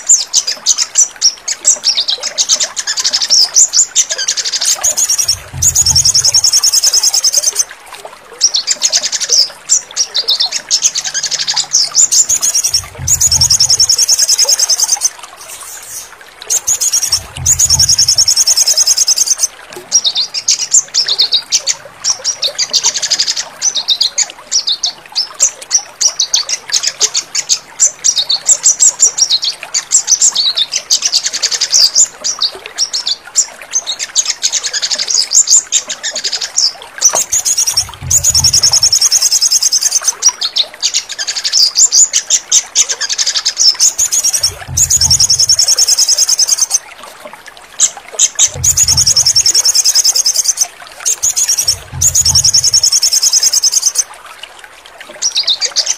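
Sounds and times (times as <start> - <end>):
sunbird twittering song: 1.8 - 7.7, 8.5 - 21.7, 36.3 - 42.1, 43.1 - 46.8, 48.2 - 54.1.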